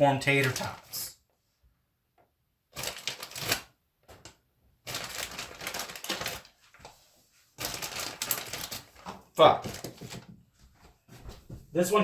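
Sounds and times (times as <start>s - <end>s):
plastic bag crinkling: 0.2s - 1.0s, 2.7s - 3.7s, 4.8s - 6.6s, 7.6s - 10.2s
frozen food shifting in bag: 4.9s - 6.6s.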